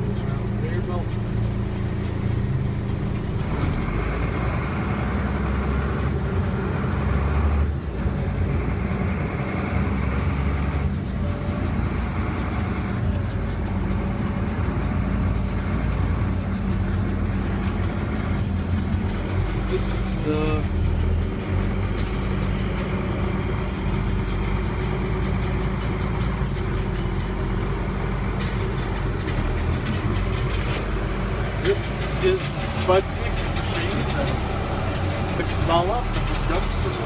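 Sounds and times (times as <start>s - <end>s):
machinery engine hum: 0.0s - 37.0s.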